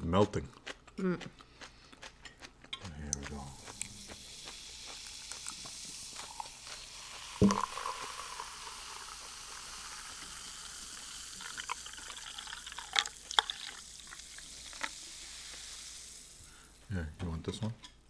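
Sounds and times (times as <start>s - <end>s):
drink poured into a glass: 3.3s - 16.9s.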